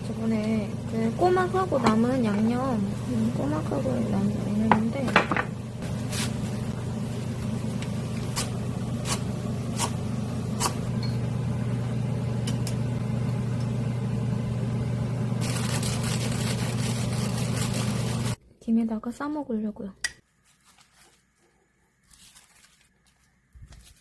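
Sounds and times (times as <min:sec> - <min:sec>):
kitchen appliance humming: 0:00.0 - 0:18.4.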